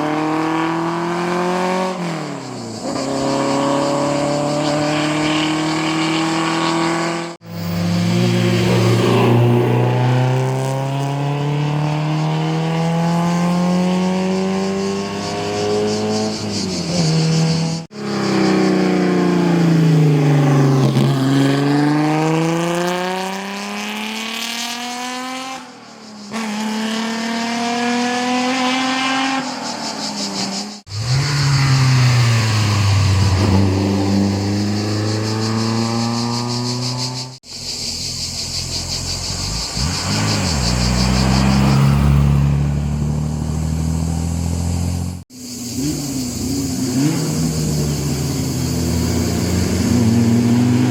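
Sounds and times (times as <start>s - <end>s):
racing car engines at full throttle: 0.0s - 50.9s.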